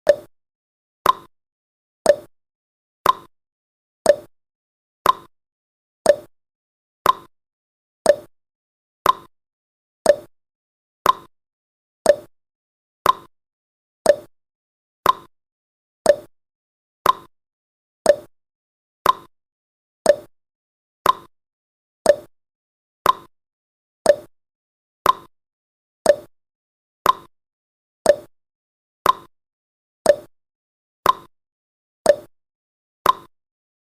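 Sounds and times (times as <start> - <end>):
timer ticking: 0.0 - 0.3, 1.0 - 1.3, 2.1 - 2.3, 3.0 - 3.3, 4.0 - 4.3, 5.0 - 5.3, 6.0 - 6.3, 7.0 - 7.3, 8.1 - 8.3, 9.0 - 9.3, 10.0 - 10.3, 11.0 - 11.3, 12.0 - 12.3, 13.0 - 13.3, 14.0 - 14.3, 15.0 - 15.3, 16.0 - 16.3, 17.0 - 17.3, 18.1 - 18.3, 19.0 - 19.3, 20.1 - 20.3, 21.0 - 21.3, 22.1 - 22.3, 23.0 - 23.3, 24.1 - 24.3, 25.0 - 25.3, 26.0 - 26.3, 27.0 - 27.3, 28.1 - 28.3, 29.0 - 29.3, 30.1 - 30.3, 31.0 - 31.3, 32.1 - 32.3, 33.0 - 33.3.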